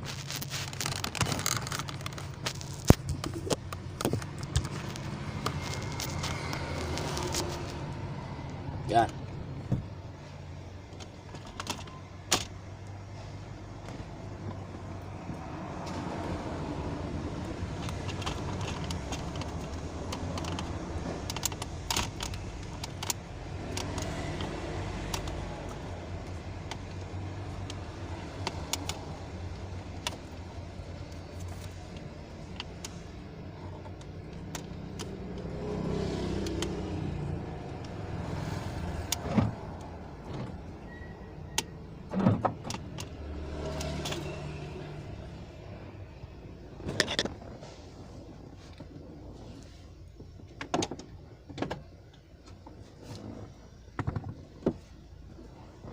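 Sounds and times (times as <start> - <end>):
car engine humming: 0.0 - 55.9.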